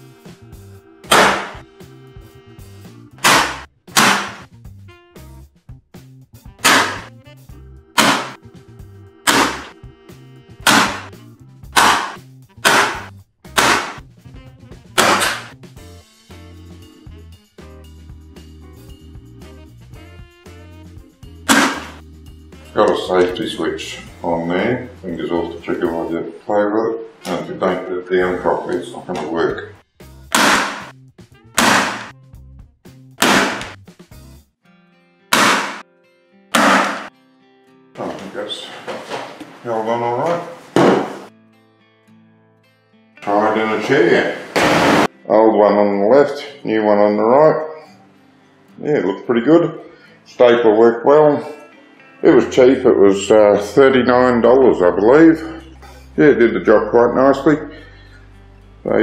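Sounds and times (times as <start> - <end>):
background music: 0.0 - 59.0
electric stapler firing: 1.1 - 1.6, 3.2 - 4.4, 6.6 - 7.1, 8.0 - 8.4, 9.2 - 9.7, 10.6 - 11.1, 11.8 - 14.0, 15.0 - 15.5, 21.5 - 22.0, 30.3 - 30.9, 31.6 - 32.1, 33.2 - 33.8, 35.3 - 35.8, 36.5 - 37.1
staple gun snapping: 15.0 - 15.5.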